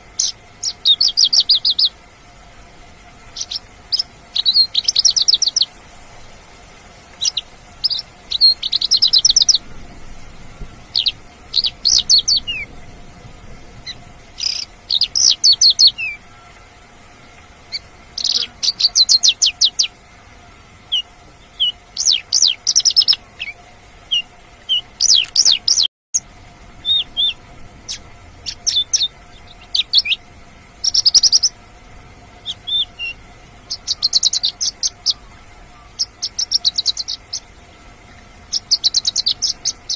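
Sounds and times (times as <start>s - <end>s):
lark singing: 0.0s - 2.0s, 3.2s - 5.8s, 7.1s - 9.8s, 10.8s - 12.8s, 13.8s - 16.6s, 17.7s - 20.0s, 20.9s - 25.9s, 26.8s - 30.2s, 30.8s - 31.6s, 32.4s - 37.6s, 38.4s - 39.9s.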